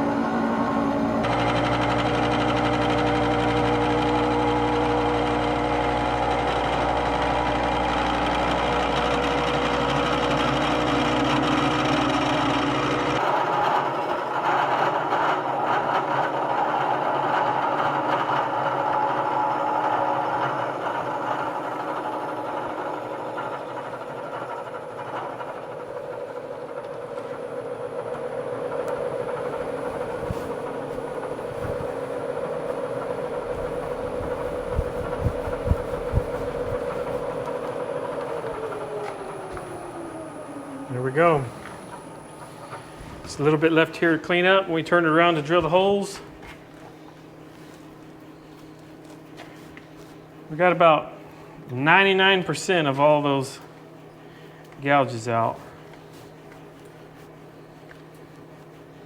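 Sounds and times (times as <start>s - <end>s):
milling machine hum: 0.0s - 44.6s.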